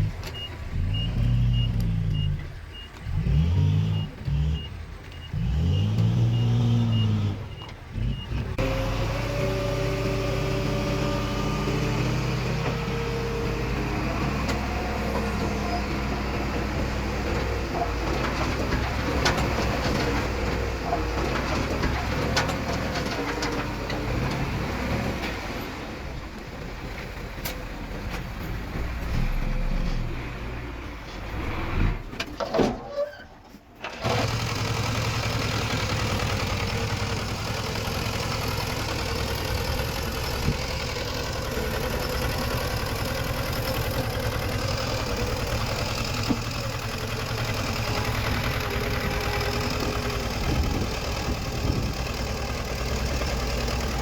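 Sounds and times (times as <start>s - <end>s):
diesel engine revving: 0.0s - 32.2s, 33.9s - 54.0s
diesel engine running steadily: 0.0s - 32.5s, 33.8s - 54.0s
reversing beeper: 0.2s - 8.5s.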